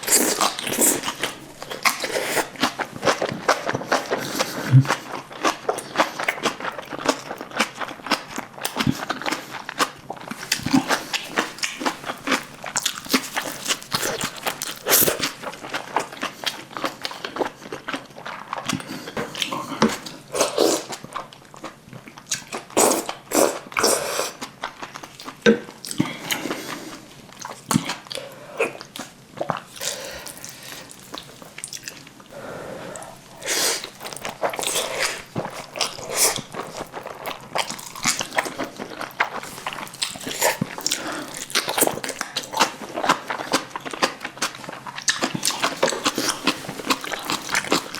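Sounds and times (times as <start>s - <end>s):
chewing and crunching bites: 0.0s - 21.7s, 33.0s - 47.9s.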